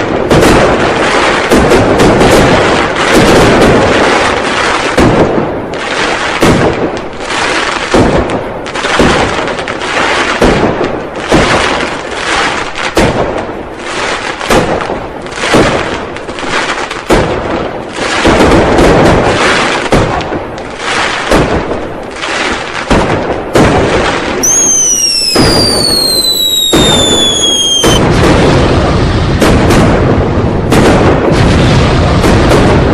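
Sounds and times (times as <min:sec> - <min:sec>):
firecrackers banging and crackling: 0:00.0 - 0:32.9
whistling firework: 0:23.6 - 0:30.0.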